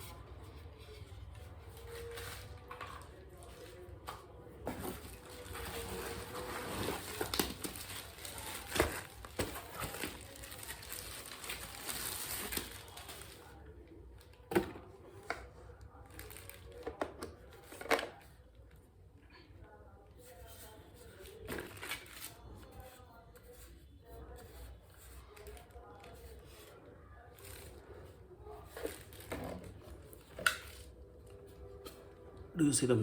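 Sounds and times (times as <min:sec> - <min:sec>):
packaging rustling and crinkling: 0:00.2 - 0:13.6, 0:16.0 - 0:17.0, 0:21.0 - 0:23.0, 0:24.6 - 0:32.0.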